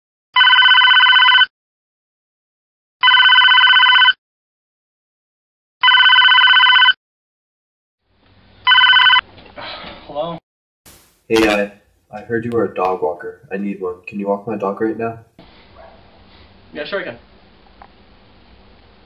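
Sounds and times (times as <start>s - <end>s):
telephone ringing: 0.4s - 1.5s, 3.0s - 4.2s, 5.8s - 7.0s, 8.6s - 9.2s.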